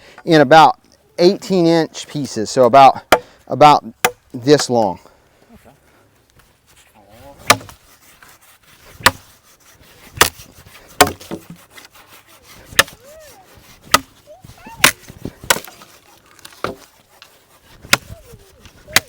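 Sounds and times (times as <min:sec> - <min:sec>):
machete chopping wood: 0:03.0 - 0:03.3, 0:07.4 - 0:07.8, 0:09.0 - 0:09.3, 0:10.2 - 0:10.4, 0:11.0 - 0:11.6, 0:12.7 - 0:13.0, 0:13.8 - 0:14.2, 0:14.8 - 0:18.2.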